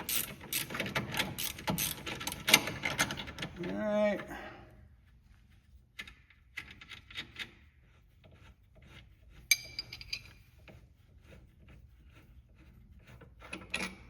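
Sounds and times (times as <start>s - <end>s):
metal parts clinking and rubbing: 0.0s - 3.8s, 9.3s - 10.7s.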